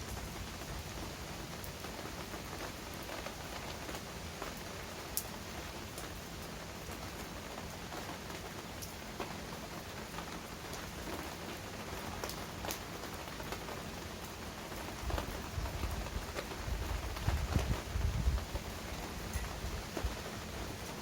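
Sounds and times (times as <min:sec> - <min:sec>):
heavy rain falling: 0:00.0 - 0:21.0.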